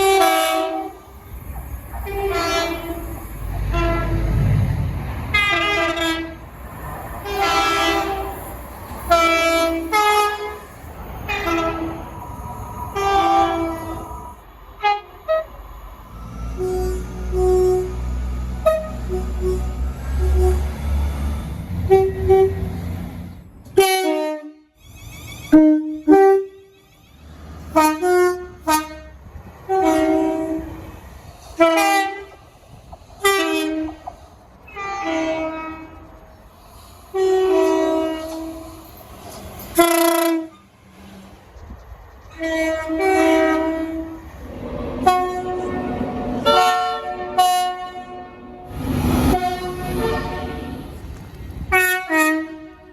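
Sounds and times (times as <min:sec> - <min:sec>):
locomotive rumble: 0:00.0 - 0:52.9
train horn chord blasts: 0:16.6 - 0:20.8, 0:27.7 - 0:30.8, 0:37.1 - 0:38.8, 0:39.8 - 0:40.6, 0:42.4 - 0:44.2, 0:45.0 - 0:50.9, 0:51.7 - 0:52.9.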